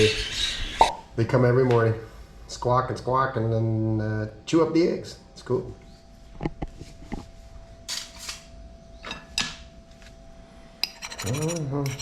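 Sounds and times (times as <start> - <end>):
utensils scraping on a pan: 7.9 - 8.5, 10.8 - 12.0
metal utensils clicking: 10.8 - 12.0.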